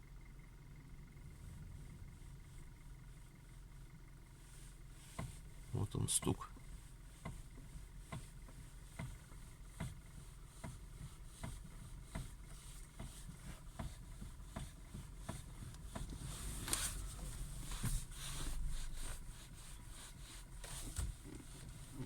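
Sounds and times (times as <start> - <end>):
steering joint knocking: 5.0 - 5.7, 6.5 - 19.5.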